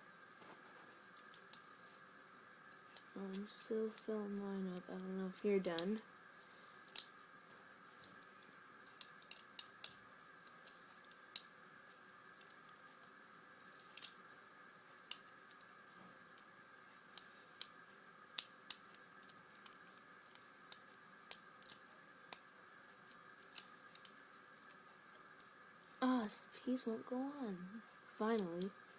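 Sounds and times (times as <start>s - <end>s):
faint steady hum: 0.0s - 28.9s
plastic bricks clicking: 1.1s - 1.6s, 5.6s - 15.7s, 17.1s - 26.0s.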